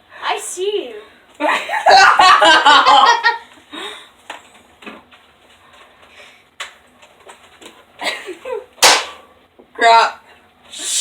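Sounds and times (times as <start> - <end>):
sharp loud snap: 8.8 - 9.2.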